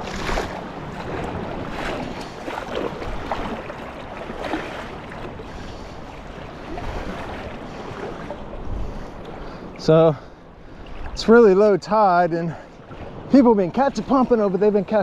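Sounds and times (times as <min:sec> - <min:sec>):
wind on microphone: 0:00.0 - 0:09.9
surf washing on beach: 0:00.0 - 0:15.0
water sloshing: 0:00.0 - 0:15.0.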